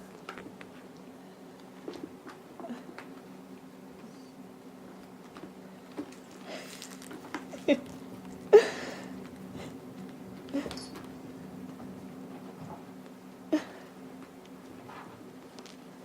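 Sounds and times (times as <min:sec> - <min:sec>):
steady low hum: 0:00.0 - 0:16.0
kittens scuffling and rustling: 0:04.9 - 0:13.2.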